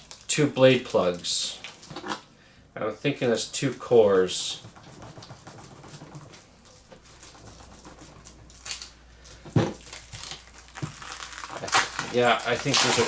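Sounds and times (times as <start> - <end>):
parcel rustling: 3.2 - 13.0.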